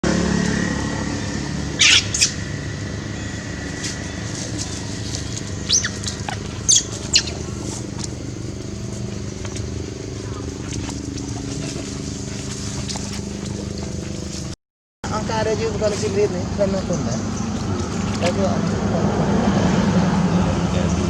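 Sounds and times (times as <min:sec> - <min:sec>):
low motor-like hum: 0:00.0 - 0:21.0
high-pitched squeaking calls: 0:01.7 - 0:08.3.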